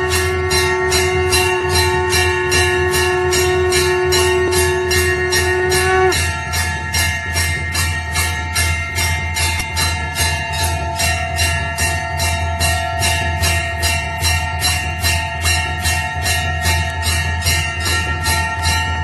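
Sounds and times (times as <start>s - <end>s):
conch shell blown: 0.0s - 7.5s
low hum: 0.0s - 11.3s
temple bells rung rapidly: 0.0s - 19.0s.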